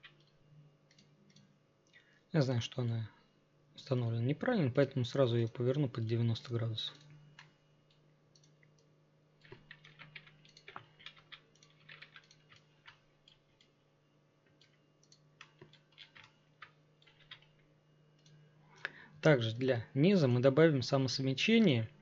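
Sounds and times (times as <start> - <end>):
low electrical hum: 0.0 - 22.0
computer keyboard clicking: 8.3 - 8.8, 9.4 - 13.7, 14.5 - 18.4.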